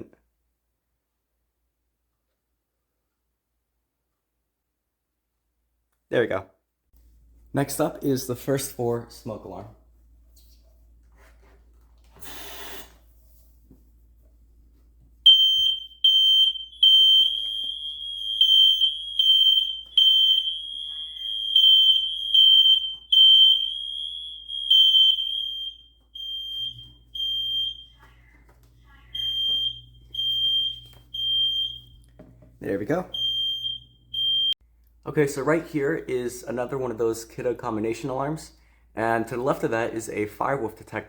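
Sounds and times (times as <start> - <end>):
smoke alarm beeping: 15.3 - 28.3, 29.0 - 32.2, 33.1 - 34.6.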